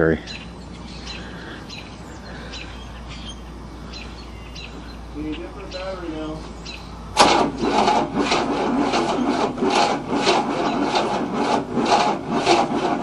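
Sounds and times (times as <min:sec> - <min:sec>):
car engine cranking: 0:06.6 - 0:13.0.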